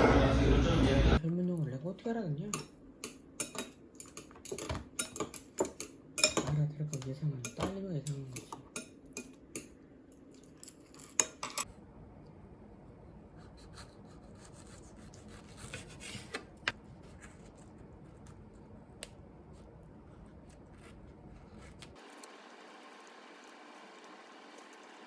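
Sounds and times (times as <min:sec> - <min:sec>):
cutlery clinking against dishes: 0:02.5 - 0:09.7, 0:10.4 - 0:11.7
faint cutlery scraping: 0:02.5 - 0:11.7.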